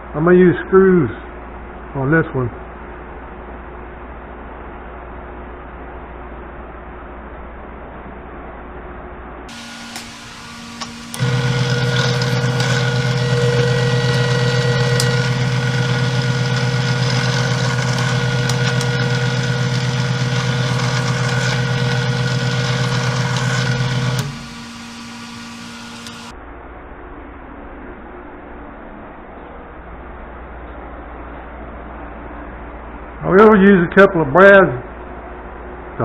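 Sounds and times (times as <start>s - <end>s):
air compressor running: 9.5s - 26.3s.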